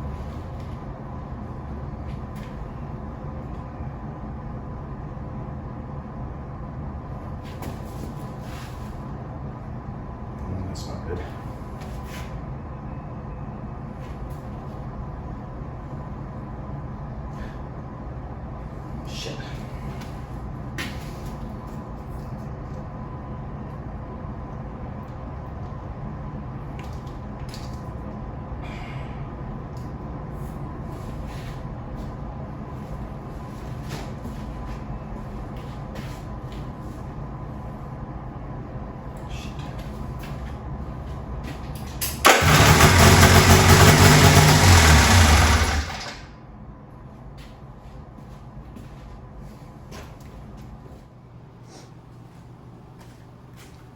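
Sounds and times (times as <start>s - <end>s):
snowmobile engine running: 42.3s - 46.2s.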